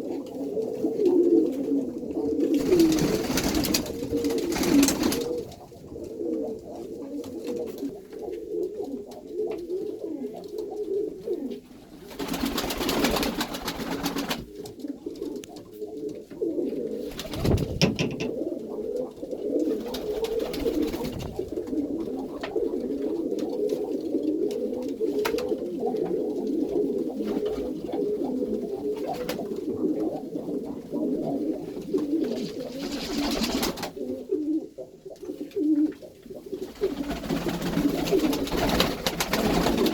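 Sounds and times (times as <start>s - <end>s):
pigeons cooing: 0.0s - 39.9s
single knock: 17.8s - 18.3s.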